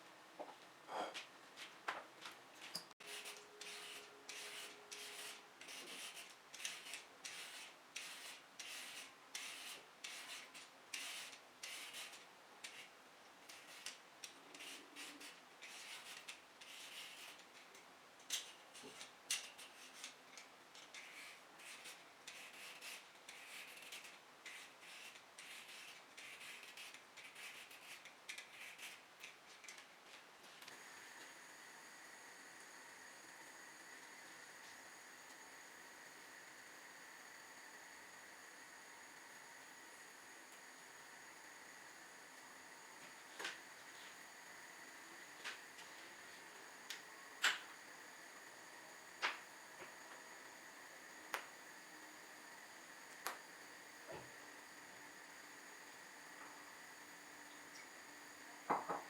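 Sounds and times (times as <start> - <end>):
faint scratching strokes: 3.0 - 12.9, 13.5 - 17.4, 20.9 - 29.0.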